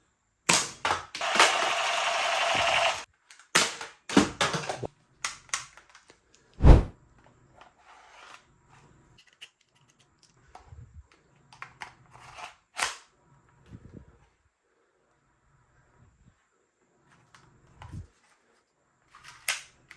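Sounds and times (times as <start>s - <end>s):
toy pistol plastic clicks: 5.2s - 6.2s
heavy thump: 6.6s - 6.9s.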